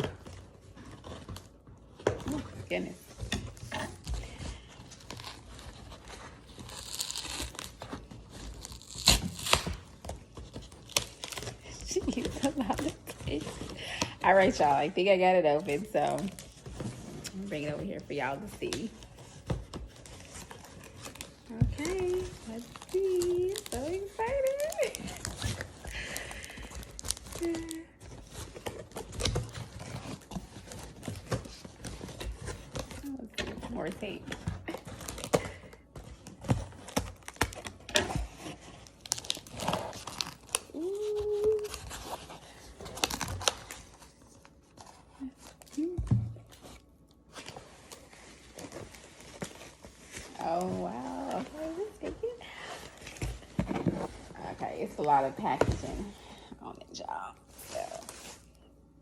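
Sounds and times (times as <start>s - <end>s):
crinkling and rustling: 0.0s - 59.0s
packing tape tearing: 3.4s - 14.8s, 15.5s - 52.3s
cardboard box being opened: 15.6s - 56.0s.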